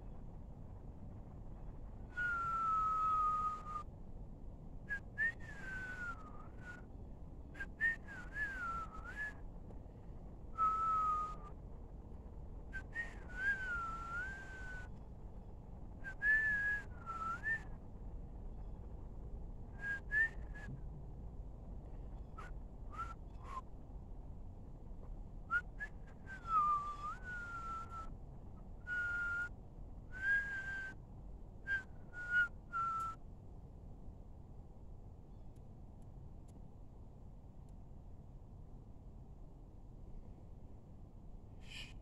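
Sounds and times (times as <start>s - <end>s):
person whistling a tune: 2.1s - 3.8s, 5.2s - 6.8s, 12.8s - 14.9s, 16.1s - 17.6s, 19.8s - 20.7s, 25.5s - 28.1s, 28.9s - 29.5s, 30.1s - 31.0s, 31.7s - 33.2s.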